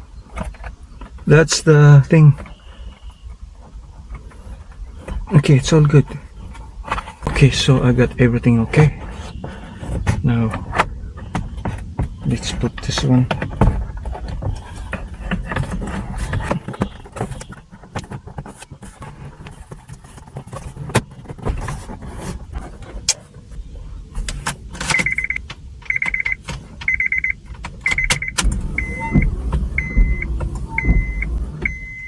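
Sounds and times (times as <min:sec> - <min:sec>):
clicks and rattles of wiring: 0:04.1 - 0:23.6
car warning chime beeping: 0:24.9 - 0:32.0.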